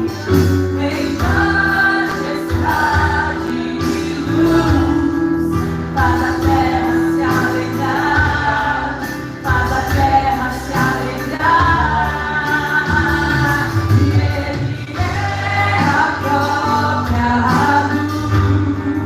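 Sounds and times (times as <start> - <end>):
band with steady bass: 0.0 - 19.0
woman singing: 0.0 - 19.0.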